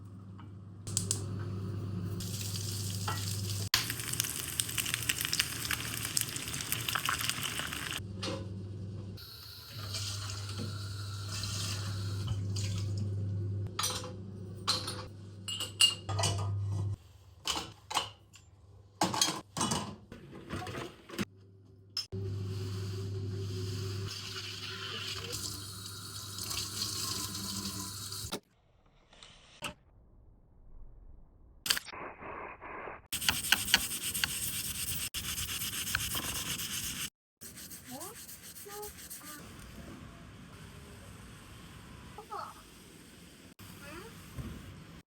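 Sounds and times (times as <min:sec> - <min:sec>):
dishes and utensils clinking: 0:13.7 - 0:16.9.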